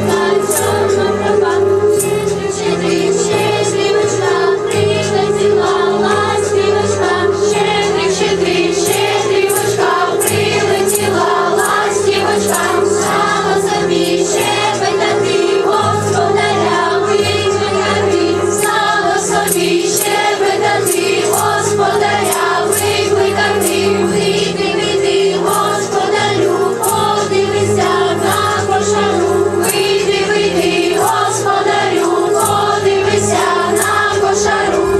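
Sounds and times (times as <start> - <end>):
choir singing: 0.0 - 34.9
musical accompaniment: 0.0 - 34.9.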